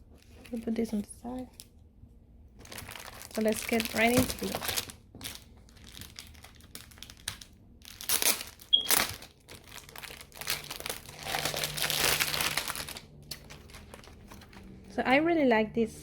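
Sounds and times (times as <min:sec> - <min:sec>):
packaging crinkling and rustling: 0:00.0 - 0:01.7, 0:02.6 - 0:14.8.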